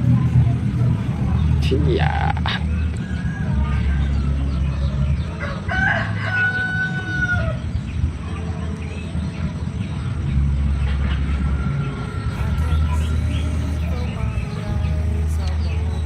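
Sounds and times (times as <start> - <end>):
steady low rumble: 0.0 - 16.0
rooster crowing: 5.4 - 7.6.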